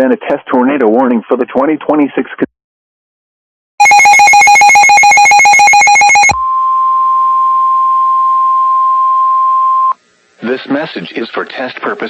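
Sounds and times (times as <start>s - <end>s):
steady warning alarm tone: 3.8s - 6.4s.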